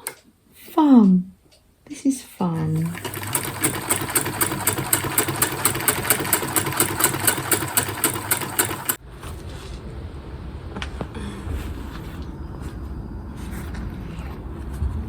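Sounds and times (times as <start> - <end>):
sewing machine running: 2.8 - 9.0.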